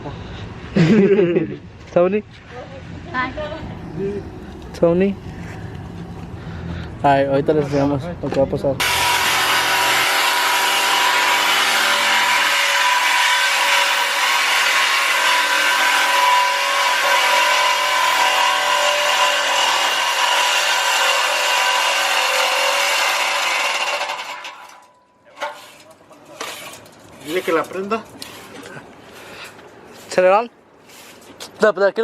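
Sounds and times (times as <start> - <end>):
power tool cutting exhaust pipe: 8.8 - 28.6.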